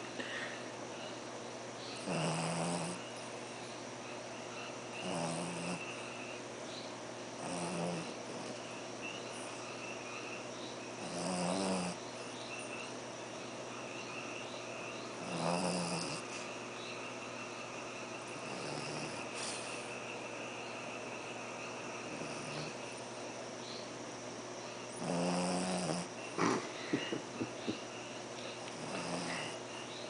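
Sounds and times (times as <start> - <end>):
dog snoring: 2.0 - 3.7, 4.5 - 6.4, 7.4 - 10.4, 11.0 - 12.9, 15.0 - 16.6, 18.2 - 23.3, 24.8 - 27.8, 28.6 - 29.7
dog breathing: 18.2 - 23.3, 24.8 - 30.0.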